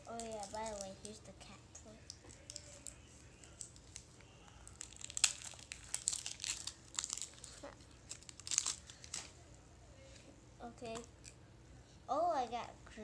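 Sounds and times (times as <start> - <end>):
wrapping crinkled and torn open: 0.0 - 1.2, 2.0 - 9.4.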